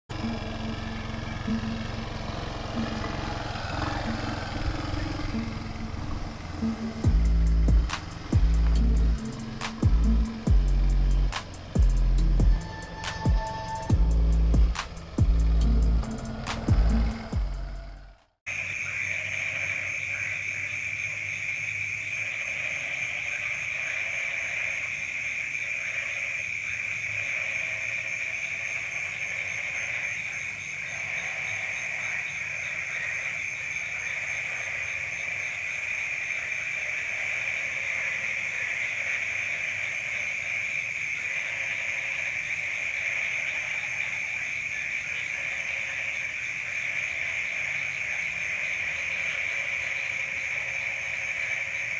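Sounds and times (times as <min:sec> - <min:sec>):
insects trilling: 0:00.1 - 0:51.9
faint shrill tones: 0:12.5 - 0:14.8.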